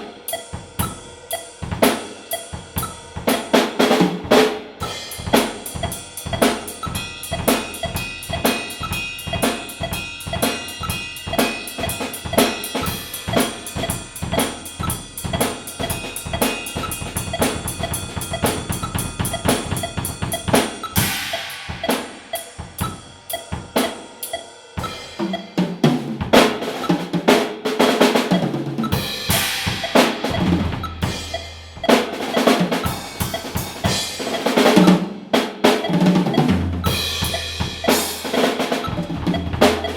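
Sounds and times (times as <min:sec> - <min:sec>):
drum kit solo: 0:00.0 - 0:39.9
cymbal crash: 0:29.0 - 0:31.6.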